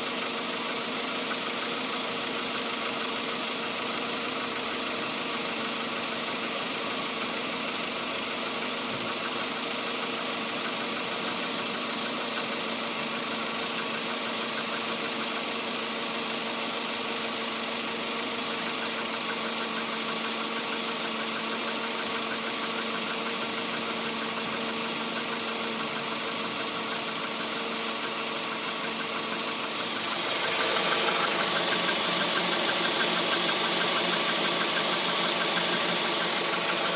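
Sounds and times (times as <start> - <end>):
petrol engine knocking: 17.5 - 36.9.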